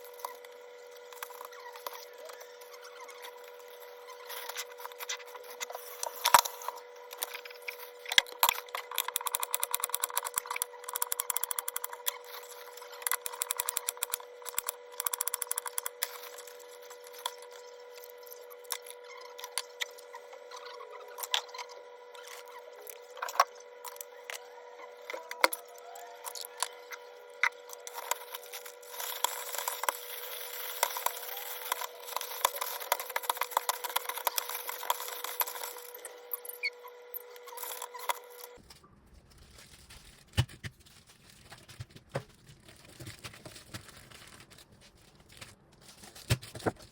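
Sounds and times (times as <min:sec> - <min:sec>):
steady hum: 0:00.0 - 0:46.9
clicks taps and scraping: 0:04.2 - 0:20.1, 0:26.2 - 0:38.6.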